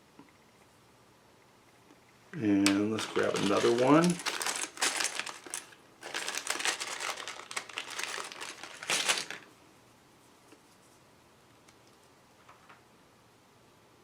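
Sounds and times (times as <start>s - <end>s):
plastic packaging crinkling: 2.6s - 9.5s.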